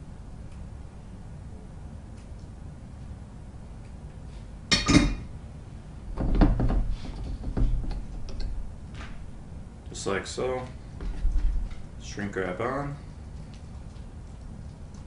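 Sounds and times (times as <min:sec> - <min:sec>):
tools knocking on workbench: 0:06.2 - 0:08.4.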